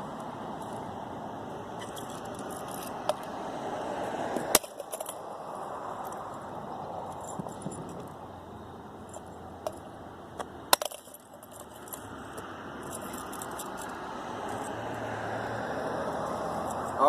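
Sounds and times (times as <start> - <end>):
steady background noise: 0.0 - 17.0
plastic housing clicking and rattling: 4.4 - 5.2, 9.1 - 14.7.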